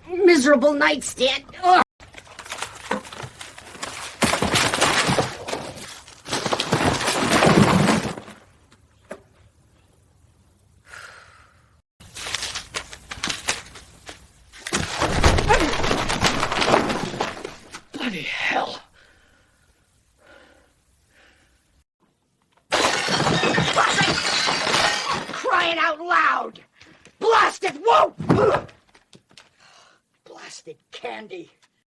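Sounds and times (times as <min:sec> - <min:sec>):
household objects crashing and breaking: 0:02.2 - 0:08.6, 0:14.7 - 0:17.9, 0:22.7 - 0:25.8.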